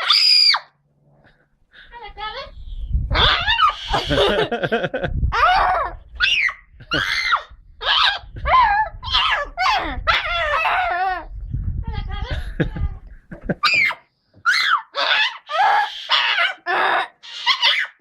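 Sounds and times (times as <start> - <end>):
parrot screeching: 0.0 - 0.7, 2.2 - 4.5, 5.4 - 11.3, 13.6 - 18.0
boy screaming and laughing: 2.0 - 18.0.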